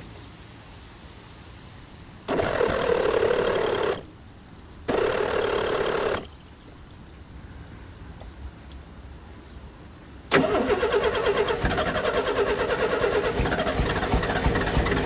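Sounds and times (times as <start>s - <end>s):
starter cranking engine: 2.3s - 4.1s, 4.9s - 6.4s, 10.3s - 15.0s.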